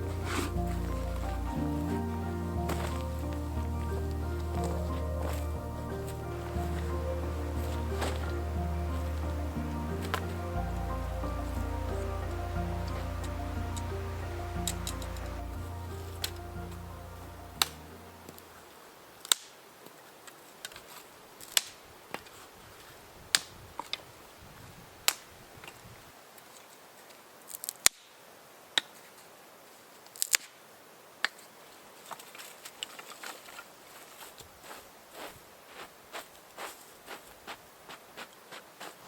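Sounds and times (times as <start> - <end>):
background music: 0.0 - 18.6.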